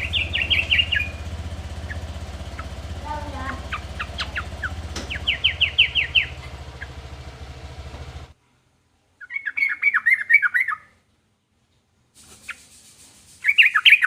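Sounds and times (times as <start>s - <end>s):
bird chirping: 0.0s - 8.3s, 9.2s - 11.0s, 12.2s - 14.0s
steady low hum: 0.0s - 8.4s.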